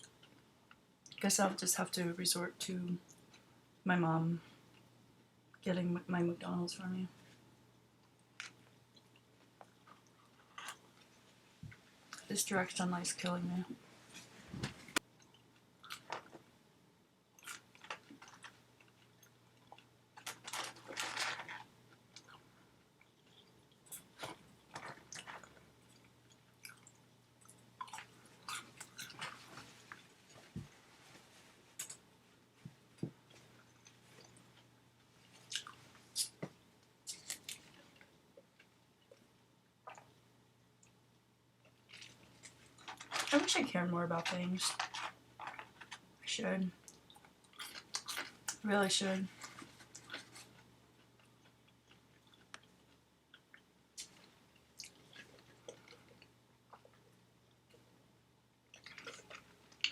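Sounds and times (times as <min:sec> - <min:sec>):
faint low hum: 0:00.0 - 0:59.9
person chewing food: 0:08.0 - 0:12.3, 0:14.9 - 0:16.4, 0:17.4 - 0:30.5, 0:33.0 - 0:36.4, 0:37.0 - 0:40.2, 0:46.8 - 0:48.6, 0:49.4 - 0:58.0, 0:58.6 - 0:59.9
mouth clicks and smacks: 0:35.5 - 0:37.7.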